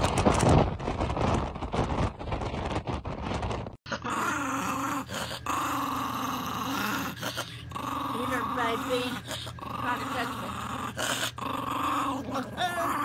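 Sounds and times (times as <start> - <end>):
dog growling: 3.9 - 13.0.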